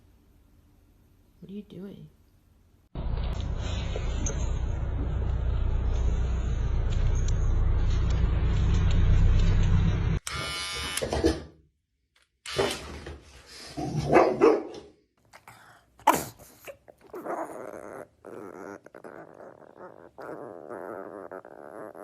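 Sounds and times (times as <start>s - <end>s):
dog barking: 13.9s - 14.9s
dog growling: 15.4s - 22.0s.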